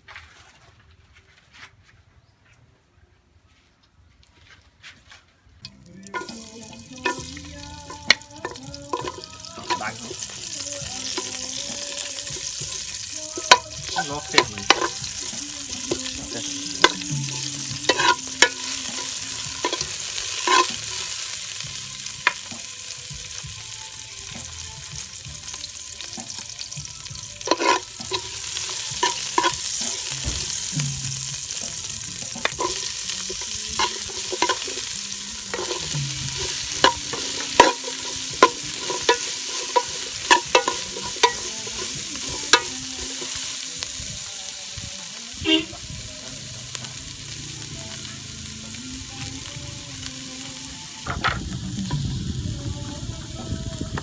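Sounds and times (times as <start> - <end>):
food sizzling in a pan: 5.6 - 54.0
utensil clinking and scraping pan: 6.2 - 21.3, 27.2 - 43.7.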